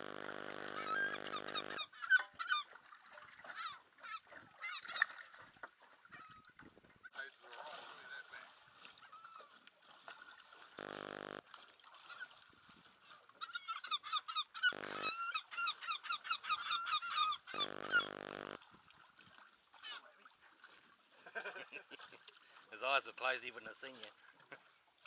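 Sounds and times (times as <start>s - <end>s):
short even buzzes: 0.0s - 1.9s, 10.8s - 11.4s, 14.6s - 15.2s, 17.5s - 18.6s.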